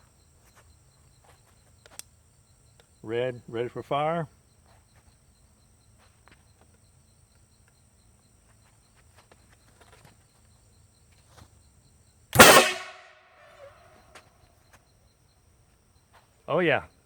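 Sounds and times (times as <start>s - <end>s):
crickets chirping: 0.0s - 17.0s
air cannon blast: 12.4s - 13.1s.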